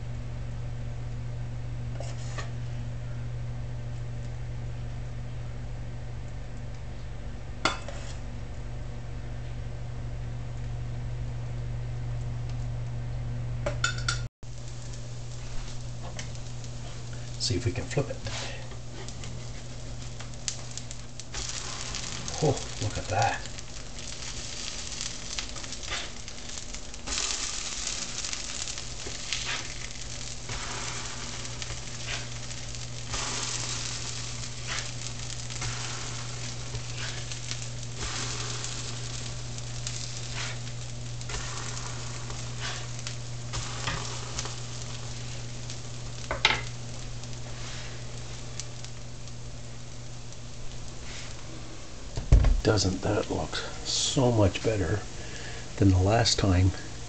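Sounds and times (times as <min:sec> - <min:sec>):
steady low hum: 0:00.0 - 0:57.0
pancakes sizzling on grill: 0:01.9 - 0:02.8, 0:07.6 - 0:08.3, 0:13.8 - 0:57.0.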